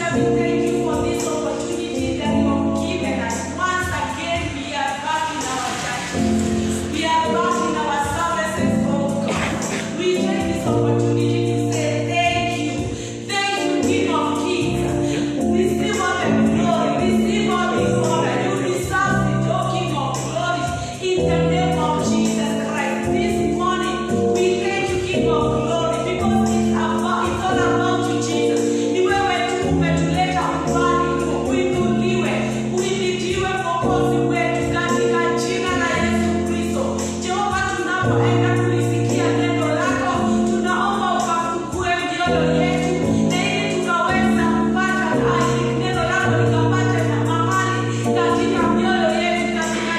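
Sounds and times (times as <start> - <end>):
instrumental chords: 0.0 - 49.9
choir singing gospel: 9.0 - 11.2, 14.4 - 19.1.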